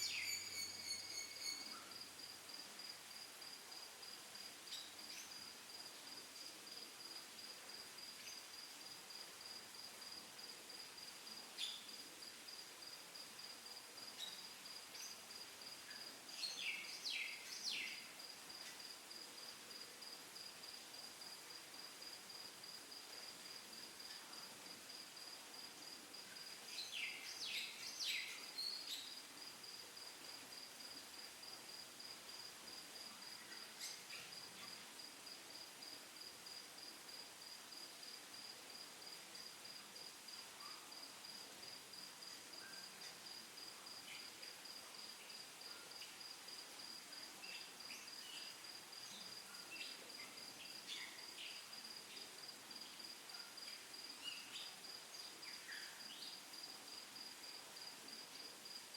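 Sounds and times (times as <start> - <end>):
cricket chirping trill: 0.0 - 5.8, 23.5 - 58.8.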